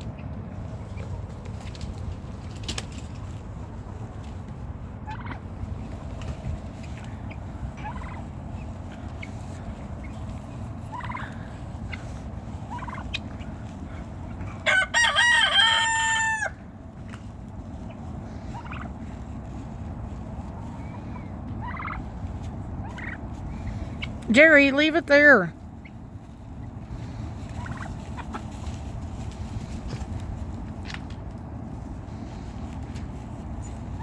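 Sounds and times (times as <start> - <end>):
poultry soft calls: 5.0 - 6.0, 6.9 - 16.5, 17.8 - 24.2, 25.8 - 30.2
rooster crowing: 14.6 - 16.6.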